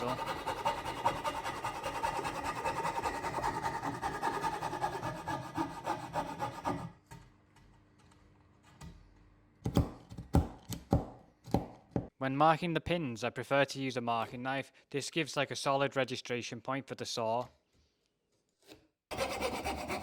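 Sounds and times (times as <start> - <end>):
coping saw cutting wood: 0.0 - 7.0, 19.1 - 20.0.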